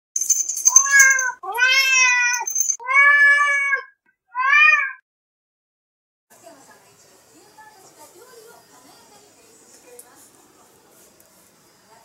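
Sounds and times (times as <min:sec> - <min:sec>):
cat meowing: 0:00.8 - 0:05.0.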